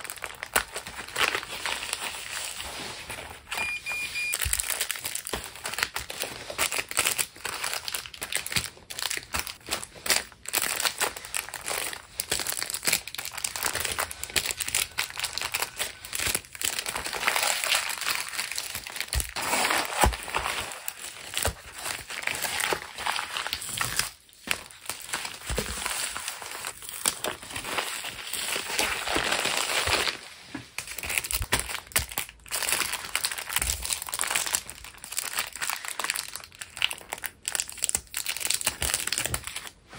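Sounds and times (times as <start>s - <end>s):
packaging crinkling and rustling: 0.0s - 3.7s, 4.3s - 39.9s.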